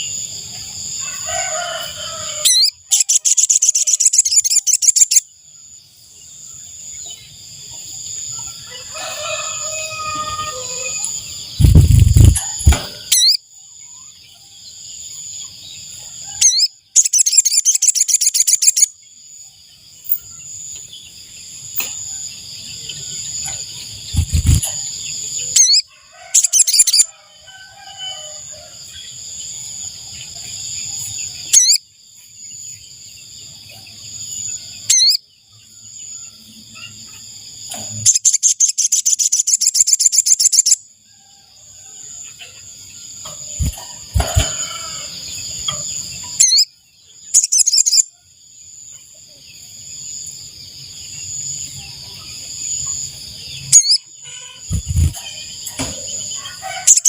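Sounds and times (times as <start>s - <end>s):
insect drone: 0.0s - 57.0s
bird pulsing trills: 10.6s - 13.4s, 24.0s - 27.1s.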